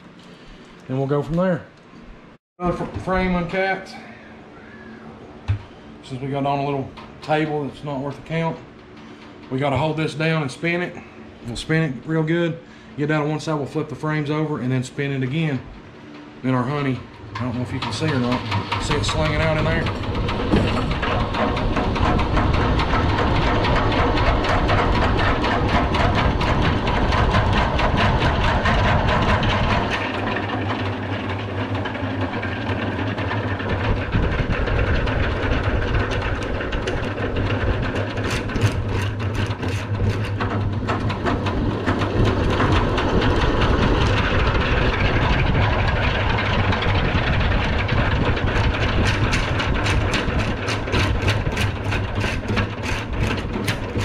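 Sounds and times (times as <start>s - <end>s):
honey extractor rattling: 13.0s - 54.0s.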